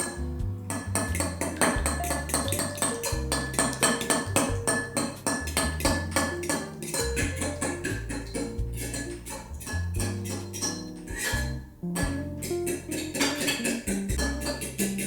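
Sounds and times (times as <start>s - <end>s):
held bass notes: 0.0s - 15.0s
quick percussive beat: 7.2s - 7.6s.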